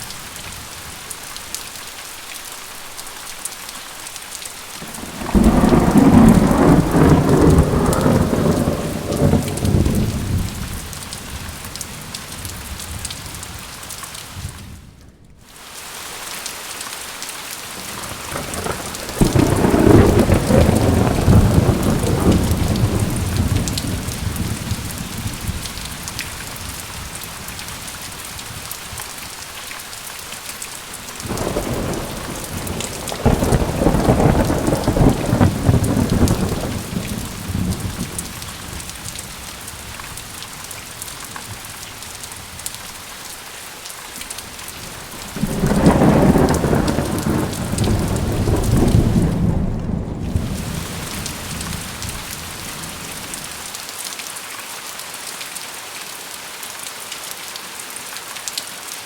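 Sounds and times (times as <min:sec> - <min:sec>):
heavy rain: 0:00.0 - 0:59.0
rolls of thunder: 0:04.8 - 0:11.6, 0:17.8 - 0:27.6, 0:31.2 - 0:39.6, 0:44.8 - 0:53.6.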